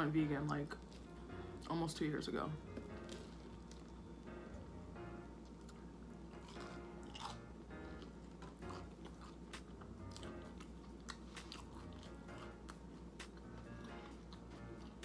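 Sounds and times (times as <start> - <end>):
quiet background music: 0.0 - 15.0
chewing and crunching: 0.5 - 1.2, 2.7 - 4.1, 5.4 - 15.0.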